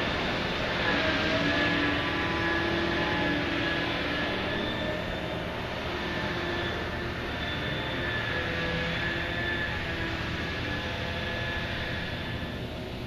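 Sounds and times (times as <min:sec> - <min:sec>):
faint high whine: 0:00.0 - 0:13.0
heavy diesel machinery running: 0:00.0 - 0:13.0.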